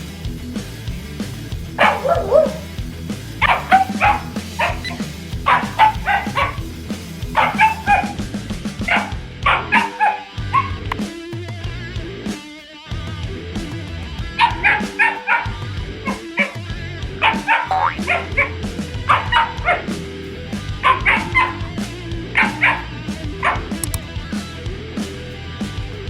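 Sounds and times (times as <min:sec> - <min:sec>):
dog barking and yipping: 0:01.8 - 0:02.7, 0:03.4 - 0:06.7, 0:07.4 - 0:08.2, 0:08.9 - 0:10.9, 0:14.4 - 0:16.6, 0:17.2 - 0:19.9, 0:20.8 - 0:21.6, 0:22.4 - 0:24.0.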